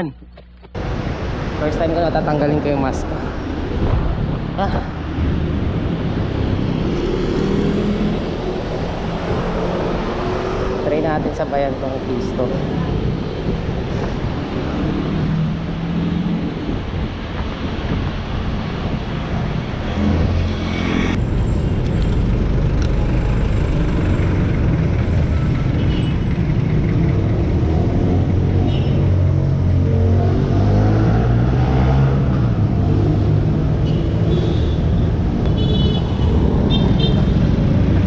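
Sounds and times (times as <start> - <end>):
road noise: 0.0 - 38.0
vehicle engines running: 19.9 - 33.8.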